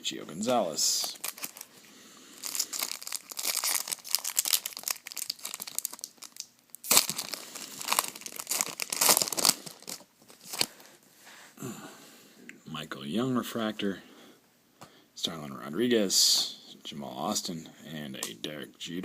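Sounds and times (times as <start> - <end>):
foil wrapper tearing and crinkling: 1.0 - 1.7, 2.4 - 10.8.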